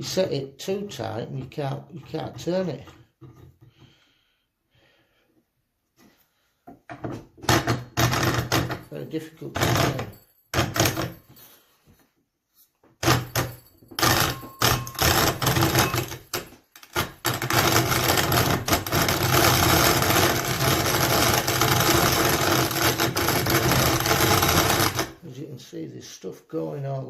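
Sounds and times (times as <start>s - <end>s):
hand-cranked grain grinder crunching: 7.4s - 11.1s, 13.0s - 25.2s.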